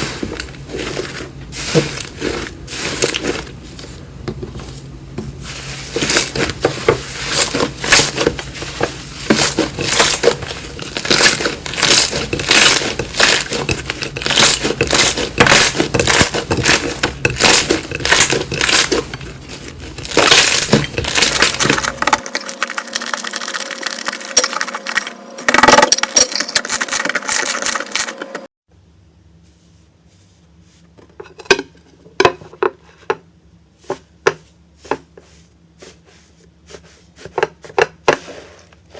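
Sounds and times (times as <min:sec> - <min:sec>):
slime crackling and popping: 0:09.4 - 0:19.0.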